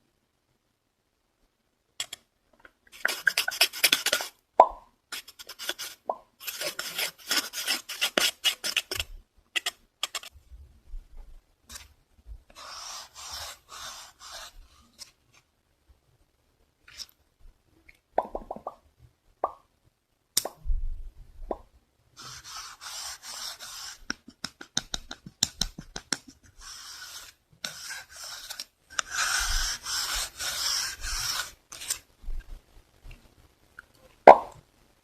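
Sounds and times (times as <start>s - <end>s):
fast scratching: 3.0s - 4.4s, 5.1s - 10.3s, 22.2s - 32.1s
soft rubbing: 10.2s - 15.5s, 22.2s - 33.5s.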